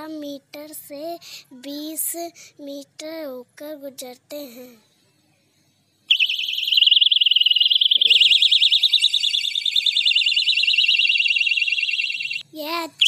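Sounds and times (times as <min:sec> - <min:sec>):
electronic siren warbling: 0:06.1 - 0:12.4.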